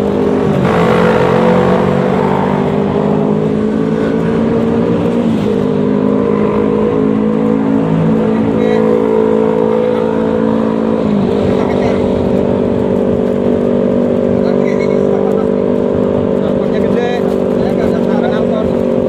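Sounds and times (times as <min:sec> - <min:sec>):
scooter engine running: 0:00.0 - 0:19.0.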